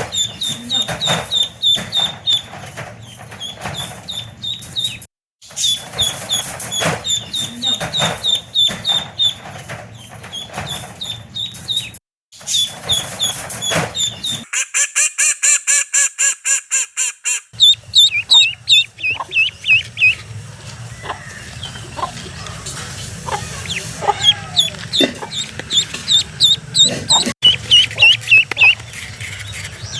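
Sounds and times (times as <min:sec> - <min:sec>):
duckling peeping: 0:17.6 - 0:20.2, 0:23.3 - 0:28.8.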